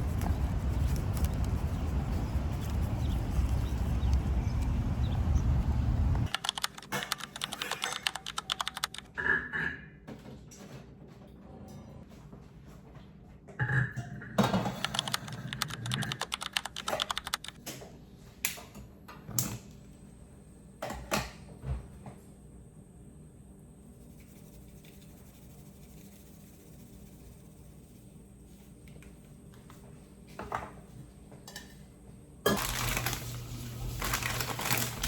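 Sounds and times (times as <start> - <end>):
keyboard key clicks: 6.3 - 9.1, 14.8 - 17.6.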